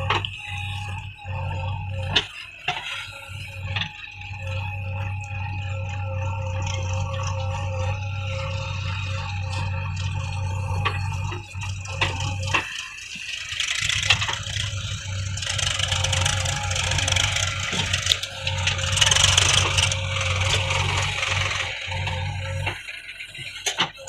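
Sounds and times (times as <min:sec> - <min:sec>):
diesel engine running: 0:00.0 - 0:24.0
metal rattling and scraping: 0:04.8 - 0:23.9.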